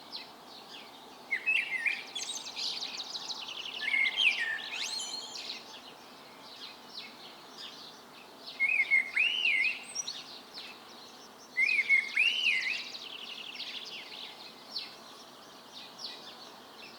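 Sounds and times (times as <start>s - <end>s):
songbirds chirping: 0.0s - 16.9s
bird singing whistle and trill: 3.8s - 5.6s, 11.6s - 12.9s.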